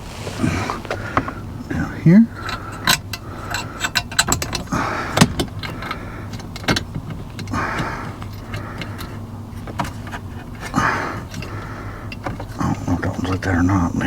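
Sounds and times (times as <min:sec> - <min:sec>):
plastic trim scraping: 0:00.0 - 0:03.0
screws and hand tools rattling: 0:00.0 - 0:13.9.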